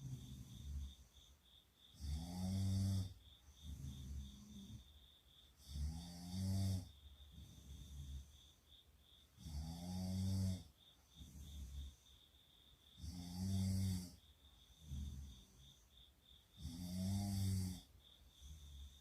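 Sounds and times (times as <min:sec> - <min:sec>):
girls snoring: 0:00.0 - 0:01.0, 0:02.0 - 0:04.9, 0:09.4 - 0:11.9, 0:13.0 - 0:14.2, 0:14.8 - 0:15.7, 0:16.6 - 0:17.9.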